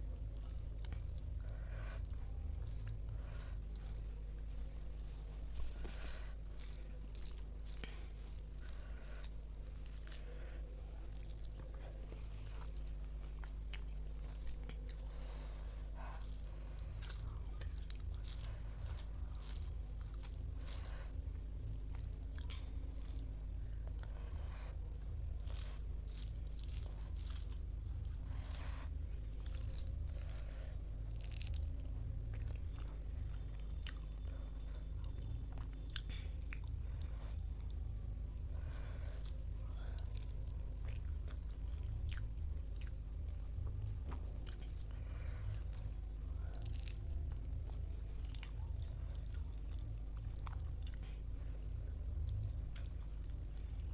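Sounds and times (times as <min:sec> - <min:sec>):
person chewing crunchy food: 0:00.0 - 0:53.9
steady low hum: 0:00.0 - 0:53.9.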